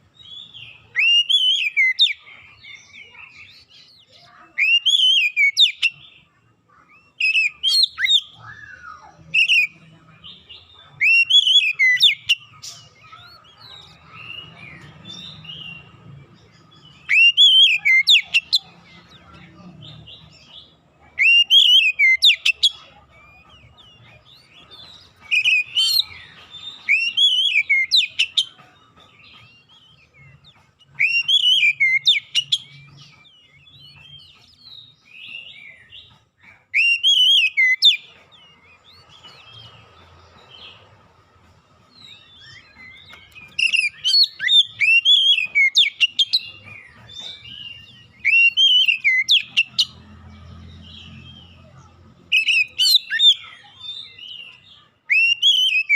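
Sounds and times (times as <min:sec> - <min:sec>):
bird singing whistled phrases: 0:00.2 - 0:02.2, 0:02.9 - 0:06.0, 0:07.1 - 0:09.8, 0:10.9 - 0:14.5, 0:16.8 - 0:18.7, 0:21.2 - 0:23.4, 0:25.2 - 0:28.5, 0:29.6 - 0:34.3, 0:36.7 - 0:38.1, 0:42.0 - 0:46.8, 0:47.4 - 0:49.9, 0:52.3 - 0:55.9.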